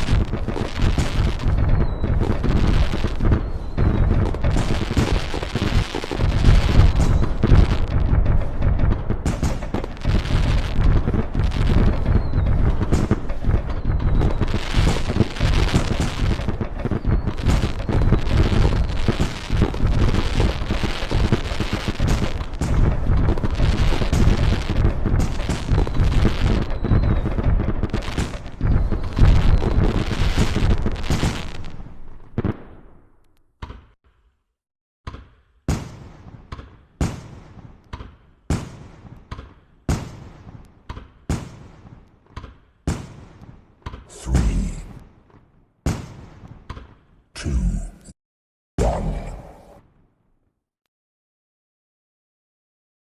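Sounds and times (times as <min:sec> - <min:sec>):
fireworks booming and crackling: 0:00.0 - 0:33.2, 0:35.6 - 0:47.6.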